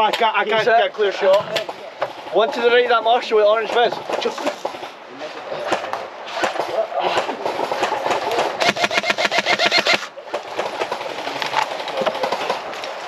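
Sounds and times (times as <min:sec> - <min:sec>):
airsoft gun full-auto burst: 0:08.6 - 0:10.1.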